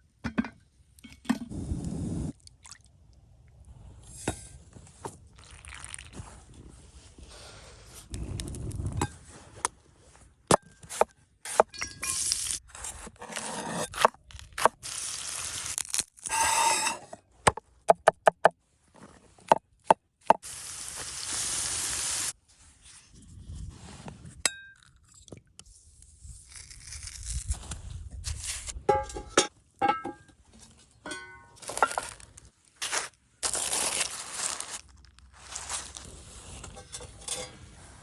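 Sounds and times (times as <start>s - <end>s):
steady cooking hiss: 20.4s - 22.4s.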